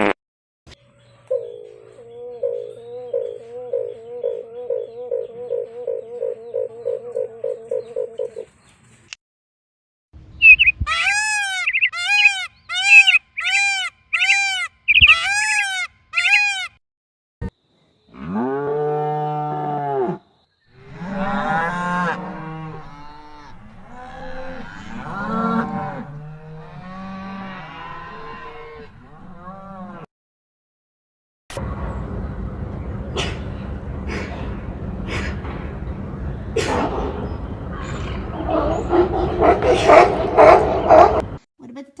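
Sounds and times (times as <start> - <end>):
short high-pitched calls: 10.4 - 16.7
cattle mooing: 20.8 - 30.1.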